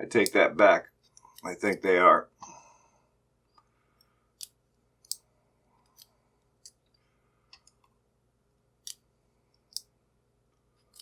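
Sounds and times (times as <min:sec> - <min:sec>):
small metal parts clicking: 0:10.8 - 0:11.0.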